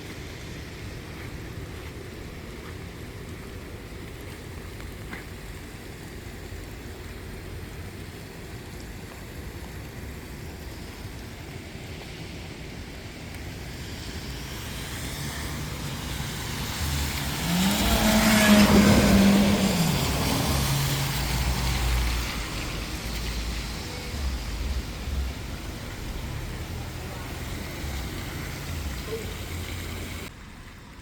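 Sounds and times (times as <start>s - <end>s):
low street background: 8.3s - 31.0s
vehicle engine passing by: 14.0s - 30.3s.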